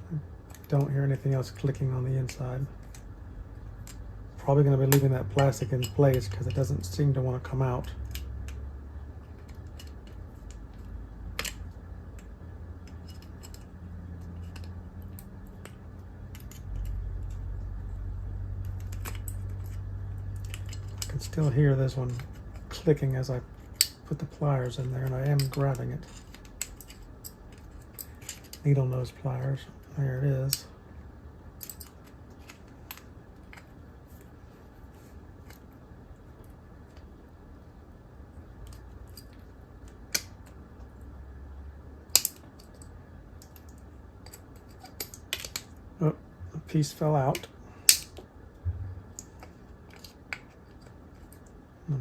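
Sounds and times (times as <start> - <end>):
low steady hum: 0.0 - 52.0
pliers clicking and scraping metal: 3.8 - 8.6, 9.2 - 17.6, 18.6 - 28.8, 31.6 - 33.7, 42.1 - 45.8, 47.2 - 48.2.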